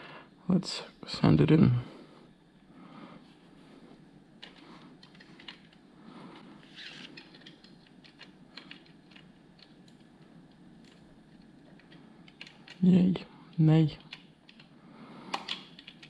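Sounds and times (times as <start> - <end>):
plastic pieces clicking together: 6.8 - 10.1, 15.3 - 16.0.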